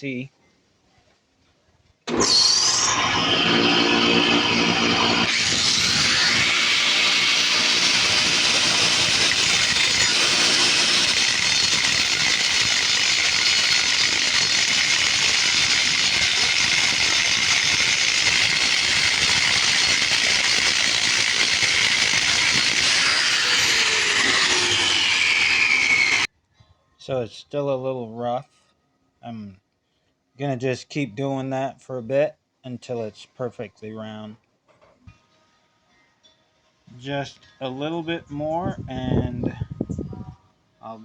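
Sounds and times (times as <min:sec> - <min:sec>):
grinder grinding steel blade: 0:02.1 - 0:26.3
motors humming: 0:02.1 - 0:26.3.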